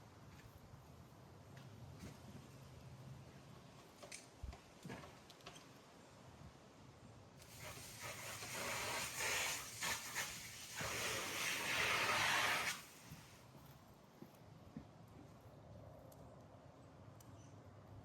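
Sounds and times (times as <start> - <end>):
rushing hiss: 7.4 - 13.5.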